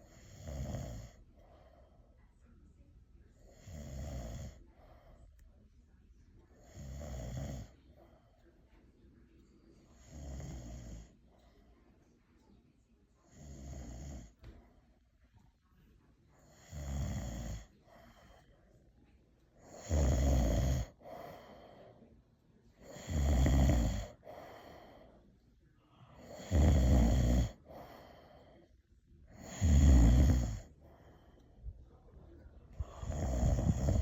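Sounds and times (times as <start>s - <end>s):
soft breath sound: 0.0s - 5.8s, 6.4s - 34.0s
man snoring: 0.1s - 1.2s, 3.5s - 4.6s, 6.6s - 7.7s, 10.0s - 11.0s, 13.4s - 14.3s, 16.5s - 17.7s, 19.6s - 21.6s, 22.8s - 25.1s, 26.2s - 28.5s, 29.3s - 30.8s, 32.8s - 34.0s.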